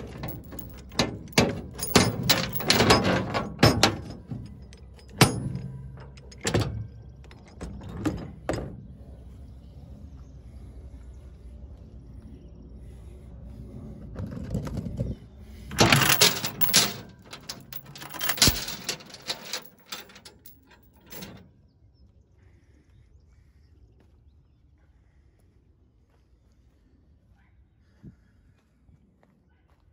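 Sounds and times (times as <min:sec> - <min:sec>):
metal chain clanking: 0:00.0 - 0:08.7, 0:15.7 - 0:21.5.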